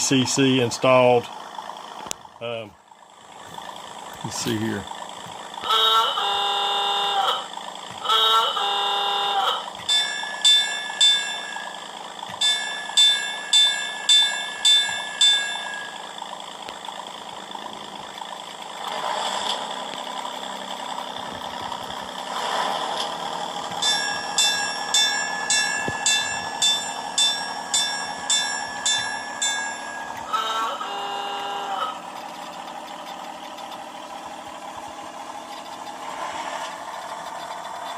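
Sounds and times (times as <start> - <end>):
model train running noise: 4.2 - 37.9
model train bell ringing: 5.7 - 16.6, 23.8 - 32.2.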